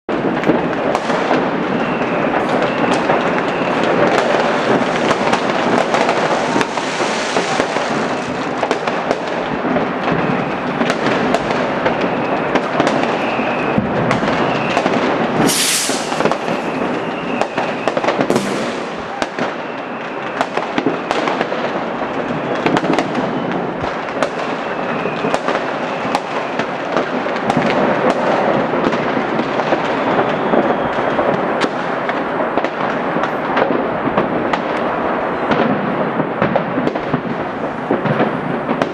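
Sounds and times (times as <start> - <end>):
firecracker bangs: 0.1 - 38.9
fireworks crackling: 0.1 - 38.9
loud hissing burst: 15.4 - 16.6, 18.3 - 19.2.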